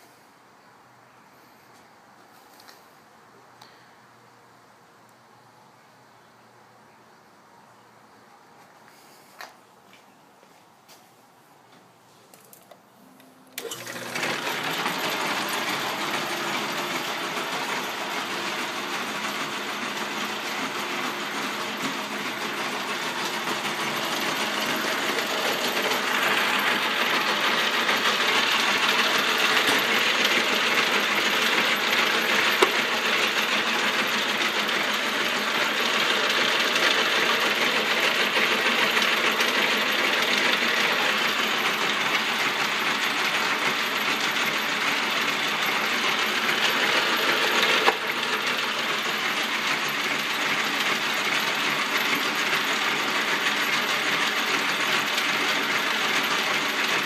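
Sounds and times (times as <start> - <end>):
metal lathe running: 13.6 - 57.0.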